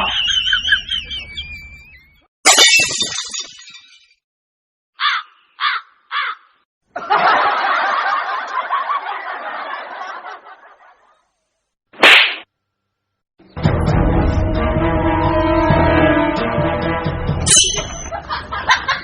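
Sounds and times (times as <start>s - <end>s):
laughter: 0.0s - 2.0s, 6.9s - 11.3s, 18.0s - 19.0s
descending chirps: 0.0s - 2.3s.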